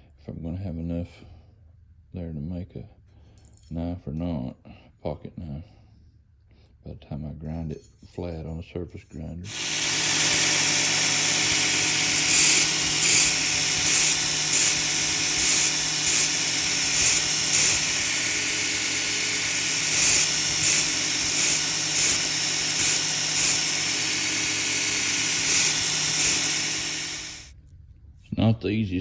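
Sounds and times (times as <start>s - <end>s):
surface grinder grinding steel: 9.4s - 27.5s.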